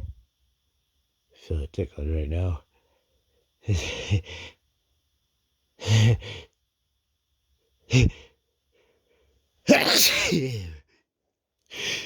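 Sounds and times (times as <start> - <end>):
man gasping before sneeze: 9.7 - 10.7.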